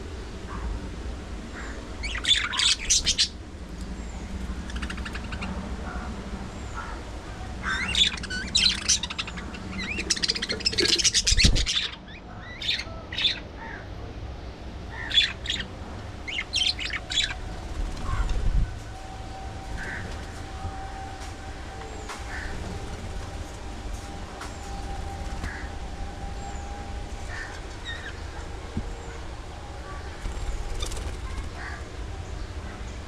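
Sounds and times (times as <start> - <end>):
budgerigars chirping and squawking: 1.6 - 3.4, 4.6 - 6.1, 7.6 - 13.8, 14.9 - 18.4, 19.8 - 20.4, 22.1 - 22.6.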